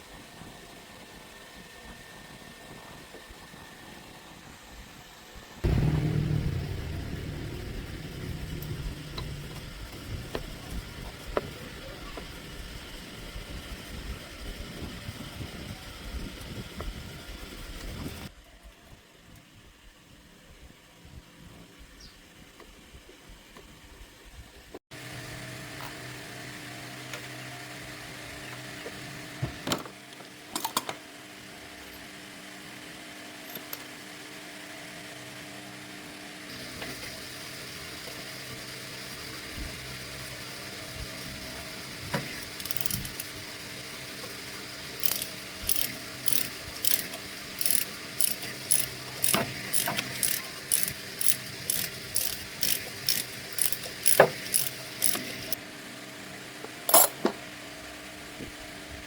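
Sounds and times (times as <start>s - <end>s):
steady low hum: 5.6s - 18.3s
sharp metal clicks: 42.4s - 43.3s, 45.0s - 55.6s
ratchet wrench clicking: 42.4s - 43.4s, 45.0s - 55.6s.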